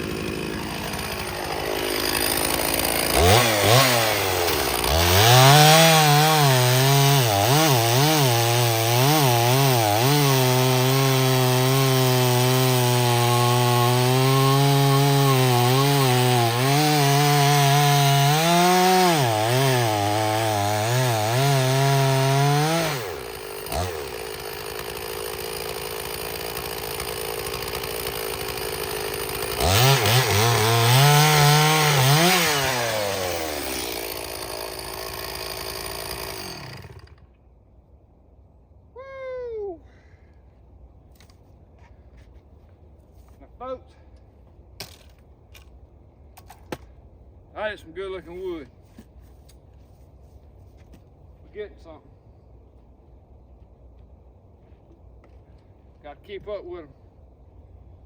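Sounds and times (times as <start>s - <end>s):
chainsaw cutting wood: 0.0s - 37.4s.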